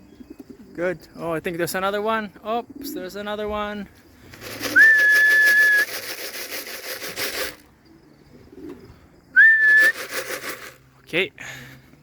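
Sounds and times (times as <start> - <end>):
fast rhythmic rattling: 4.4 - 7.6, 9.7 - 10.8
person whistling a high note: 4.7 - 5.9, 9.4 - 10.0.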